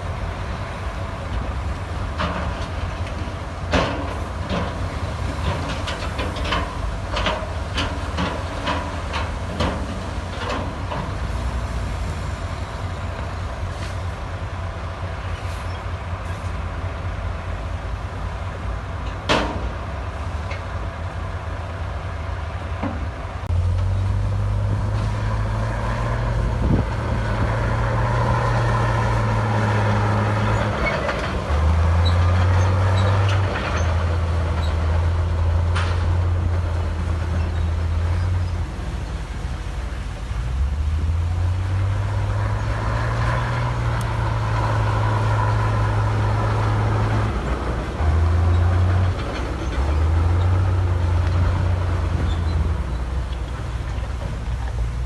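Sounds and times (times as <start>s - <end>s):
diesel machinery engine: 0.0s - 55.0s
metallic clanks and knocks: 2.2s - 11.2s, 19.0s - 19.8s.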